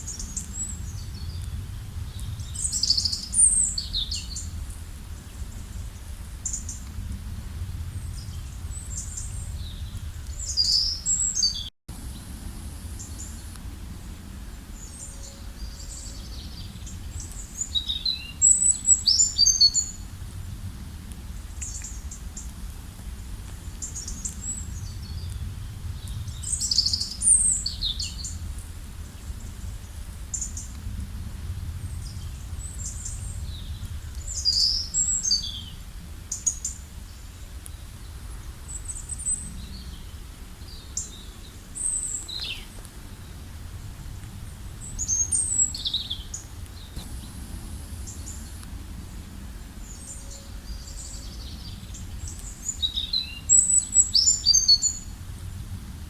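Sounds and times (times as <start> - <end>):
songbirds singing: 0.0 - 7.0, 7.9 - 22.5, 23.6 - 30.8, 31.7 - 55.7
low rumble: 43.4 - 52.3.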